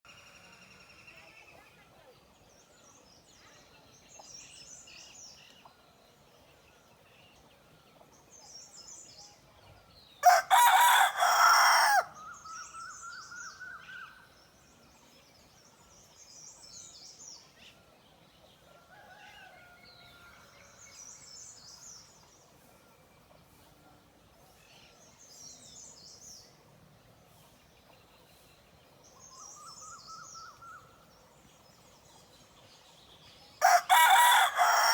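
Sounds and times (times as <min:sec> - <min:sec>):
rooster crowing: 0:10.2 - 0:12.2, 0:33.6 - 0:34.9.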